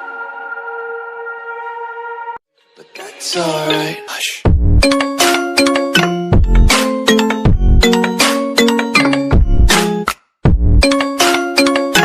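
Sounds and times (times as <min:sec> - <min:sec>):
electronic beat with deep bass: 0:04.5 - 0:12.0.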